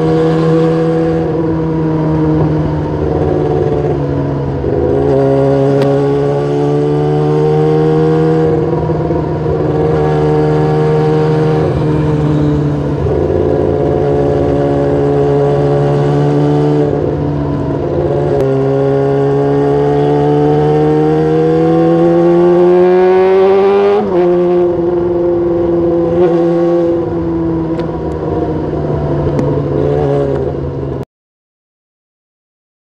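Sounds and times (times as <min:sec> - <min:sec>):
motorcycle engine with loud exhaust: 0:00.0 - 0:31.0.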